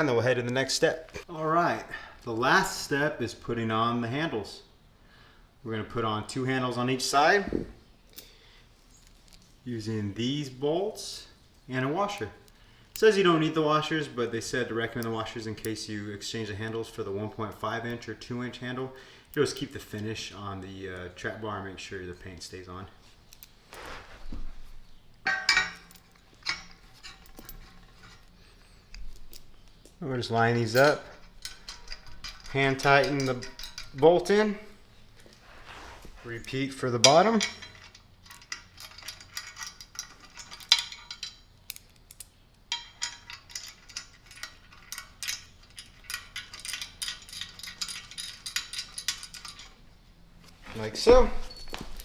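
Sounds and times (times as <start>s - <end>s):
metal hardware clinking: 12.1s - 52.0s
bolt threading clicks: 37.1s - 49.8s.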